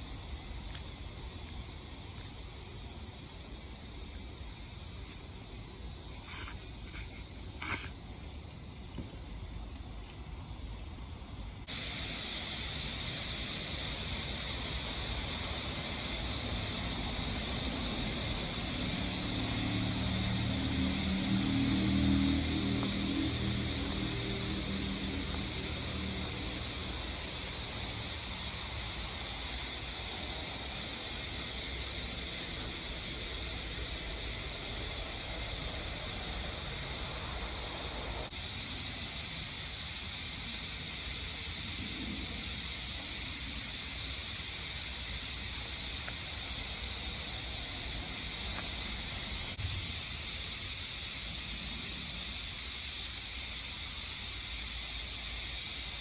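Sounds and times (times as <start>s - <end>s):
insects shrilling: 0.0s - 56.0s.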